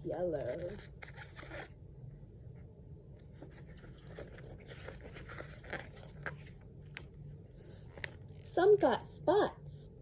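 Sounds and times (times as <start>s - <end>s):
low steady hum: 0.0s - 10.0s
paper pages rustling: 3.2s - 8.5s.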